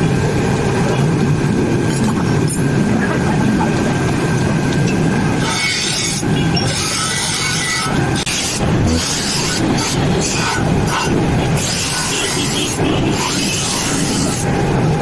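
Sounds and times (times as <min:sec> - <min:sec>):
steel blade grinding on wheel: 0:04.8 - 0:14.7
grinder running: 0:05.1 - 0:14.8.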